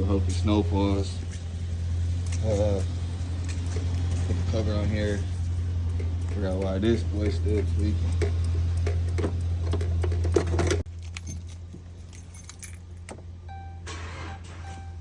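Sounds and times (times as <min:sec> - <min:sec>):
steady low hum: 0:00.0 - 0:15.0
keys jangling: 0:00.2 - 0:09.2, 0:10.6 - 0:13.1
faint steady tones: 0:11.2 - 0:15.0.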